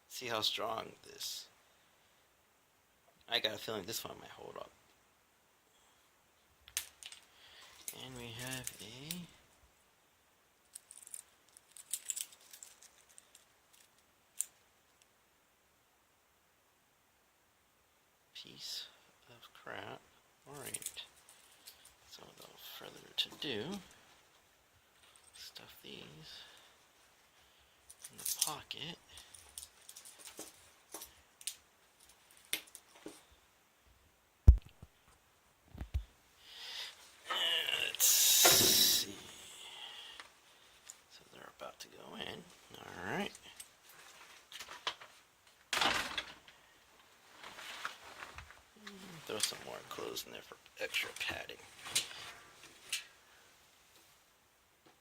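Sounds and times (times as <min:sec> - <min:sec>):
small metal clicks and rustles: 0:06.6 - 0:09.3, 0:10.6 - 0:15.1, 0:20.6 - 0:22.5, 0:24.9 - 0:25.4, 0:27.8 - 0:33.2, 0:43.3 - 0:48.6
wristwatch clinks and rattles: 0:10.7 - 0:14.0.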